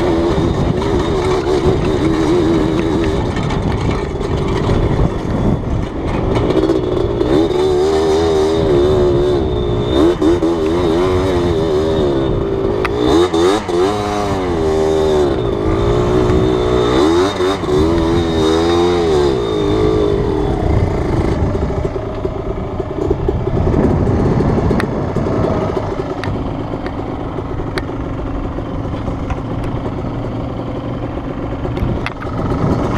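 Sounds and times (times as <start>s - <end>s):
two-stroke engine revving: 0.0s - 32.9s.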